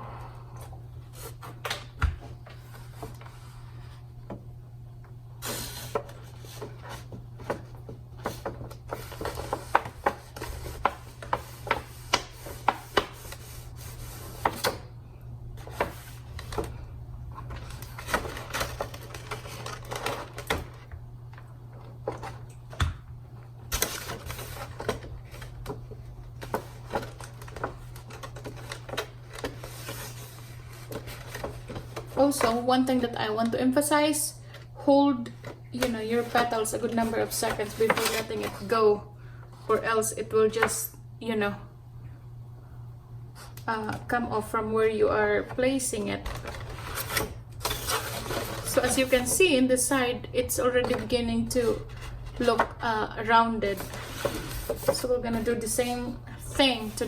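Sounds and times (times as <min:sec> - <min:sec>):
low electrical hum: 0:00.0 - 0:57.0
paper crinkling and tapping: 0:05.9 - 0:13.6, 0:15.6 - 0:23.0, 0:23.7 - 0:33.0, 0:35.2 - 0:38.7, 0:45.4 - 0:49.4.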